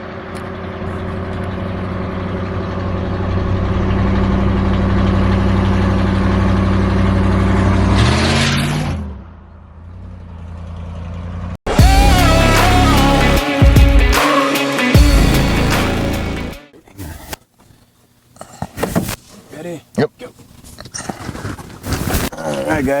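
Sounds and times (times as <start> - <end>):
vehicle engine running: 0.0 - 8.3, 9.1 - 14.2, 15.0 - 16.7.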